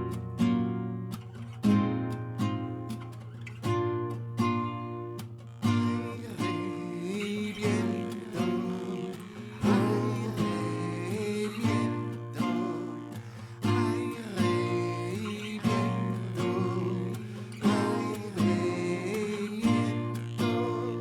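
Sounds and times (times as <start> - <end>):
acoustic guitar strumming: 0.0 - 21.0
person singing: 5.8 - 21.0.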